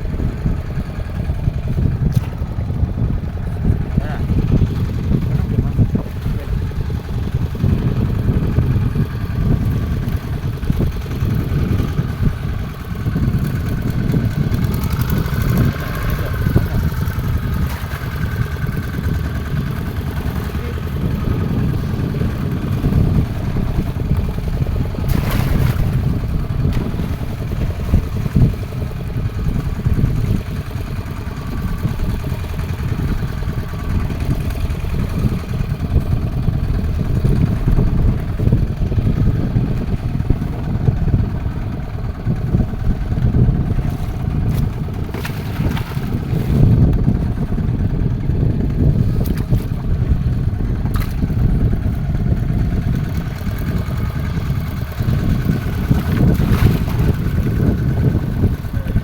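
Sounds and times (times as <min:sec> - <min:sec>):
boat engine rumbling: 0:00.0 - 0:59.0.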